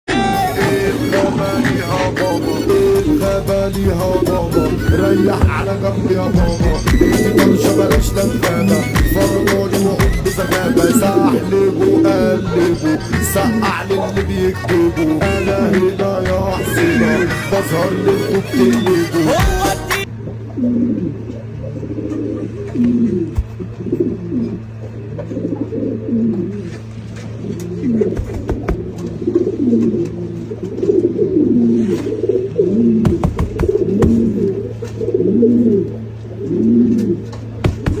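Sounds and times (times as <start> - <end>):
steady low hum: 0.1 - 38.0
pigeons cooing: 0.2 - 38.0
sharp knocks: 33.0 - 34.4, 37.6 - 38.0.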